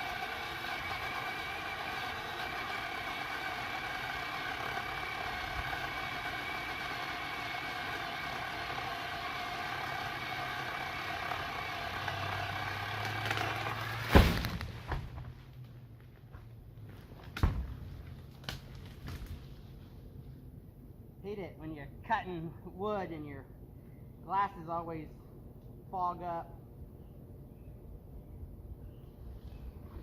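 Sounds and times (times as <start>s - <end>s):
pole saw motor whining: 0.0s - 14.1s
saw chain cutting wood: 0.0s - 14.1s
loud thump: 14.1s - 15.2s.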